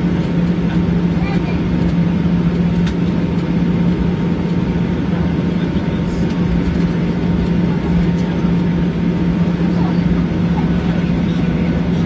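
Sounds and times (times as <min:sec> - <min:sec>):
airplane cabin engine drone: 0:00.0 - 0:12.0.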